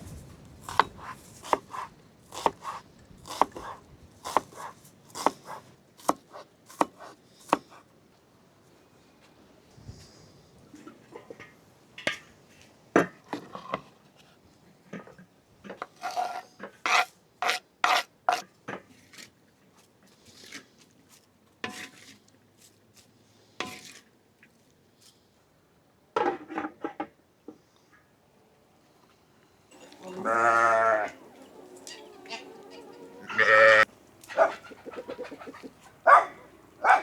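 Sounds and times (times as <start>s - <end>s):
scraping and rubbing on wood: 15.8s - 18.4s.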